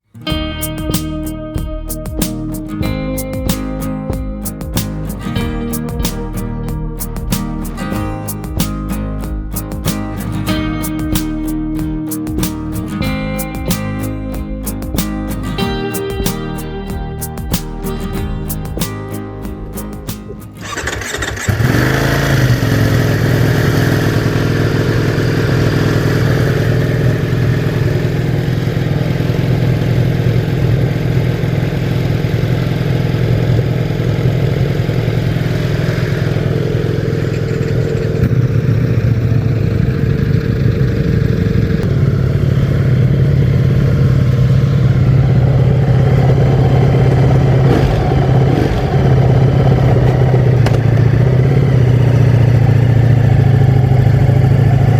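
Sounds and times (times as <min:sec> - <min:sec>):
motorcycle engine starting and idling: 0:19.6 - 0:54.9.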